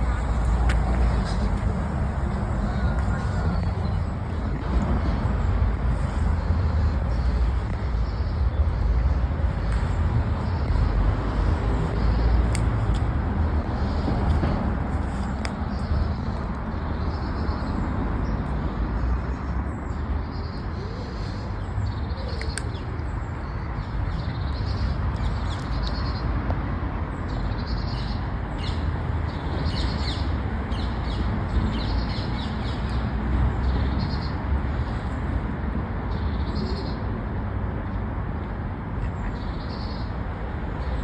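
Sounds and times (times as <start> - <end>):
low outdoor rumble: 0.0 - 17.1
small birds chirping: 0.0 - 26.3.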